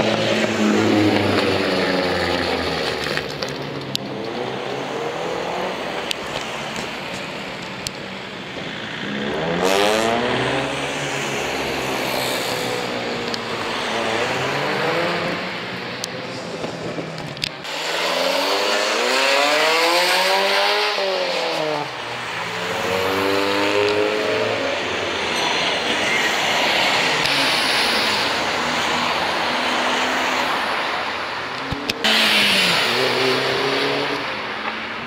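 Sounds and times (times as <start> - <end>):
car engine revving: 0.0 - 8.0, 8.7 - 35.0
loud exhaust blast: 32.0 - 34.1.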